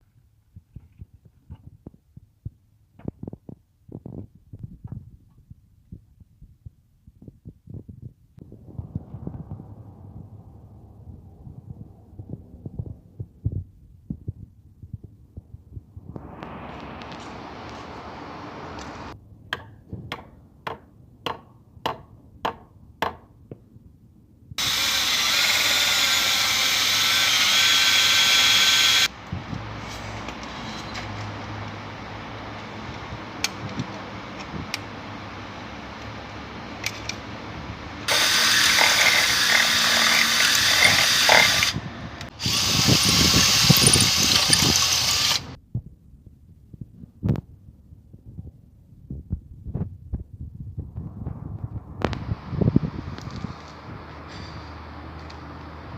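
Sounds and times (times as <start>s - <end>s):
power drill running: 24.6s - 29.1s, 38.1s - 45.6s.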